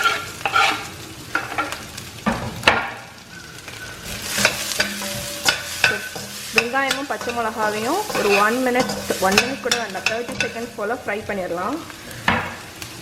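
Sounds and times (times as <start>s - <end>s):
spatula scraping pan: 0.0s - 2.4s, 3.2s - 11.3s
onions sizzling in hot oil: 0.0s - 13.0s.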